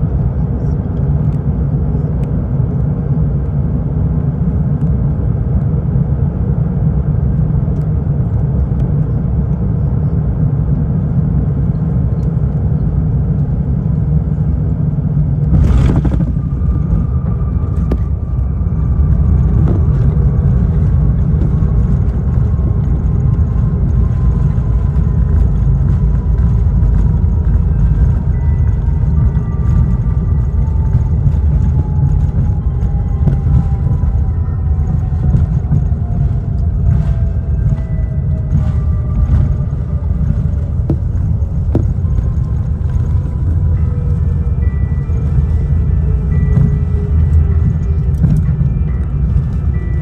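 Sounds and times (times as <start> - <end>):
jet engines rumbling: 0.0 - 50.0
engine whine falling in pitch: 14.4 - 50.0.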